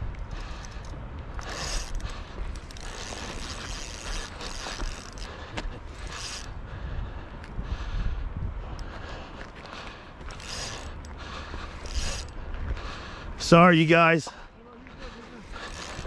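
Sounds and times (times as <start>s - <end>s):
fishing reel ratcheting: 0.3s - 6.6s, 10.2s - 12.4s, 15.5s - 16.0s.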